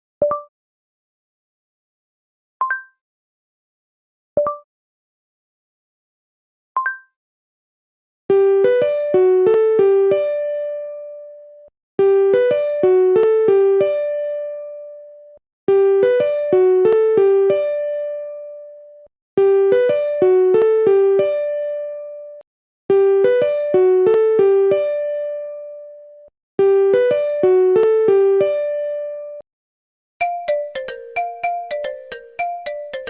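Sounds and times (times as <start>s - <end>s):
electric piano ringtone: 30.2s - 33.0s
fast chiming ringtone: 30.2s - 33.0s.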